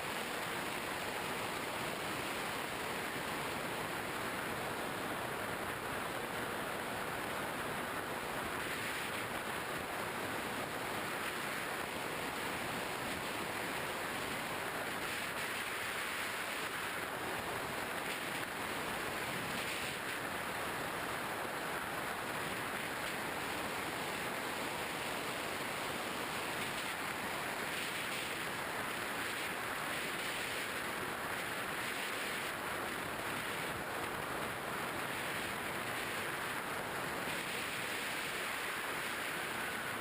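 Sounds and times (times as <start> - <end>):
rushing wind noise: 0.0 - 40.0.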